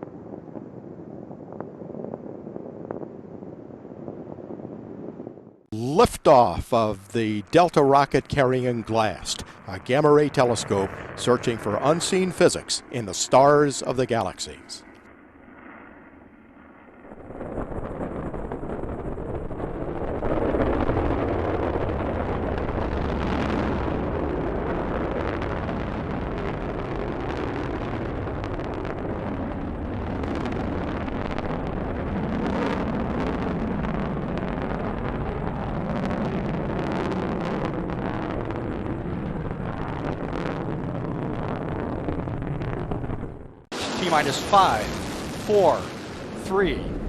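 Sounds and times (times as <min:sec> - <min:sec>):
rocket engine rumbling: 0:00.0 - 0:15.0, 0:17.0 - 0:47.0.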